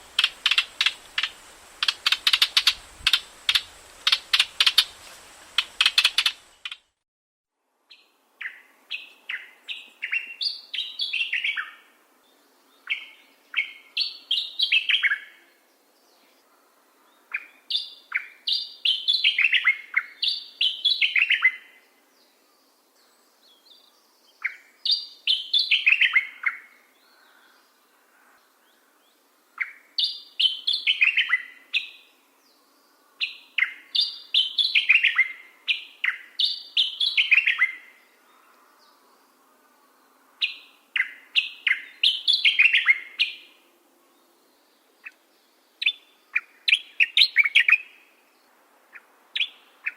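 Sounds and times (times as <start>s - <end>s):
warbler singing: 29.6s - 39.4s, 40.0s - 48.1s.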